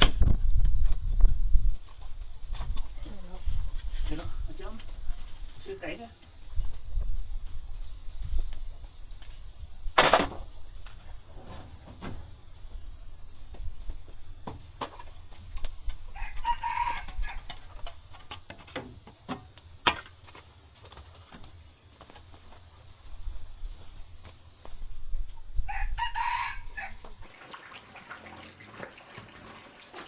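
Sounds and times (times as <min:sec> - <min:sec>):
rooster crowing: 0:16.1 - 0:17.6, 0:25.7 - 0:27.2
chickens: 0:16.1 - 0:18.0.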